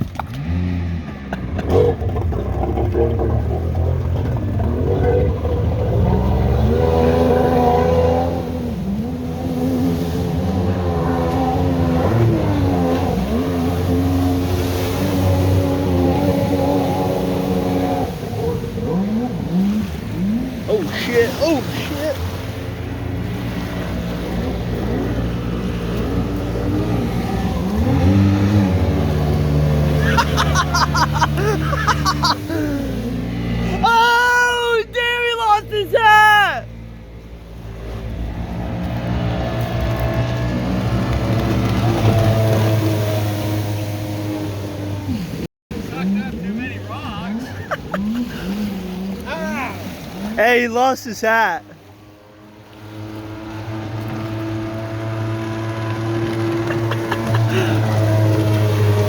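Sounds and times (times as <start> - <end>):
jet ski engine revving: 0.0 - 59.0
voices: 20.2 - 22.8, 33.6 - 36.7, 45.8 - 51.8.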